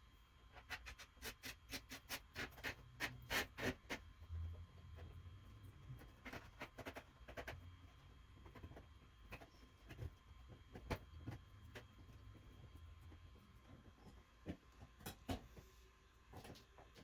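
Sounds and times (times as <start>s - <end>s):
clicks and scrapes of wires: 0.6s - 4.1s, 5.9s - 7.6s.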